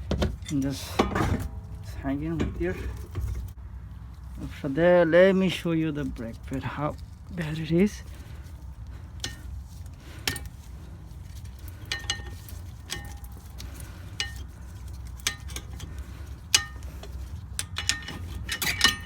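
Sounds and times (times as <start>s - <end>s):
steady low hum: 0.0s - 19.0s
metal parts clinking: 11.7s - 19.0s.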